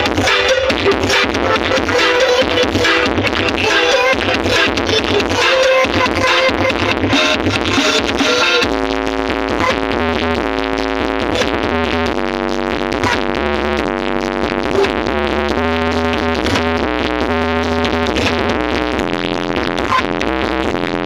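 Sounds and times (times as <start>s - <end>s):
synthesizer chords: 0.0s - 15.6s
heavy bass line: 0.0s - 21.0s.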